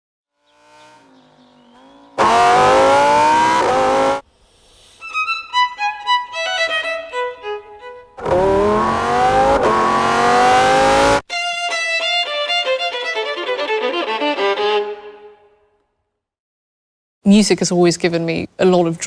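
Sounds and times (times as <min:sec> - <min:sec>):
car engine revving: 0:00.4 - 0:04.2, 0:08.2 - 0:11.2.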